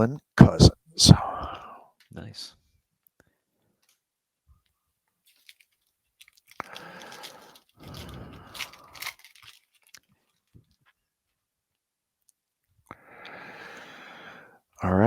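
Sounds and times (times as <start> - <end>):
wrapper tearing and crinkling: 5.3 - 10.5.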